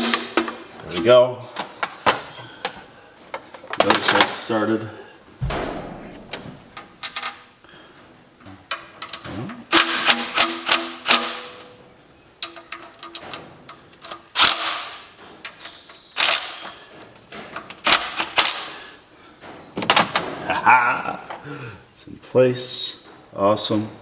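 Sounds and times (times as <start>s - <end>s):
metal tools clanking on bolts: 12.4s - 14.4s.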